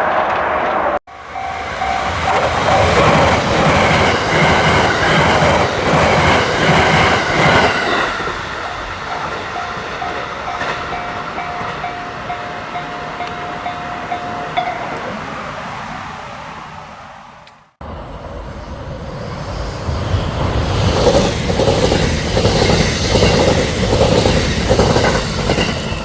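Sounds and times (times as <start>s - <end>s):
electric train passing at speed: 0.0s - 26.0s
level crossing warning bell: 1.1s - 7.2s, 8.6s - 15.4s
train wheels clattering over rail joints: 20.7s - 26.0s.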